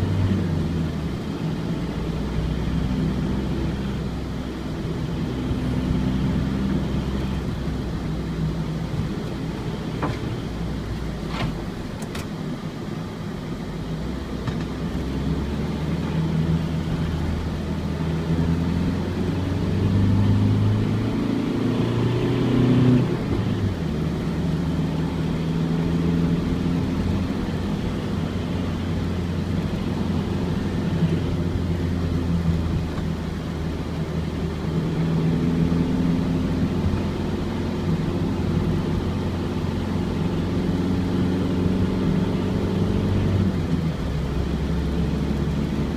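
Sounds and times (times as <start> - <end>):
diesel van engine driving: 0.0 - 45.9.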